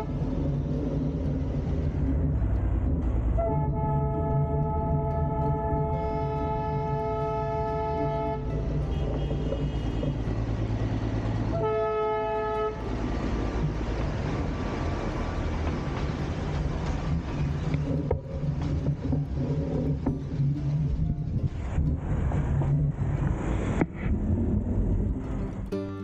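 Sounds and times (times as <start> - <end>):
train horn blasts: 0.0 - 0.5, 3.3 - 13.1
train running rumble: 0.0 - 25.8.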